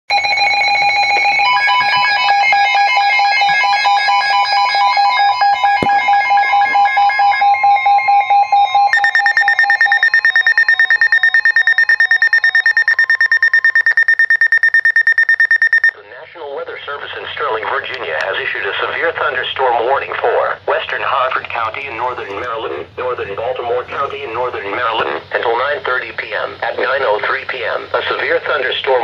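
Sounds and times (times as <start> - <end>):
rapid electronic beeping: 0.2 - 15.9
high-pitched pulsing beep: 5.4 - 15.9.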